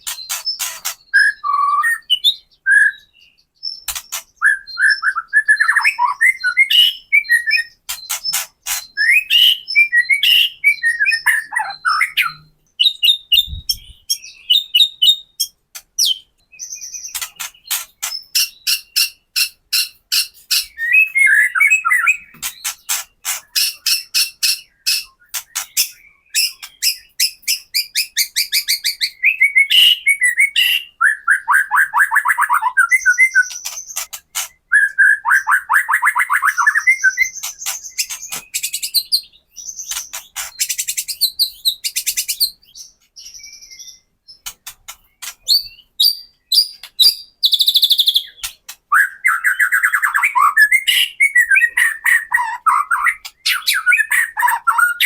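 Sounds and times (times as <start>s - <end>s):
bird rapid dry clicking rattles: 0.0s - 1.0s, 7.9s - 8.9s, 17.1s - 18.5s
bird singing whistled phrases: 0.3s - 7.8s, 9.0s - 17.2s, 20.5s - 22.3s, 23.5s - 33.8s, 34.7s - 40.0s, 45.5s - 55.0s.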